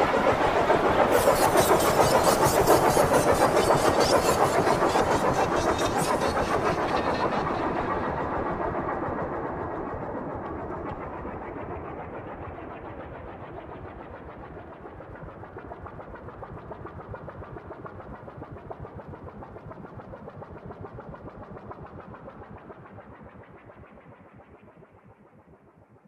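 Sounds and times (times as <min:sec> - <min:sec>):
fast fluttering pulse: 0:00.0 - 0:08.0.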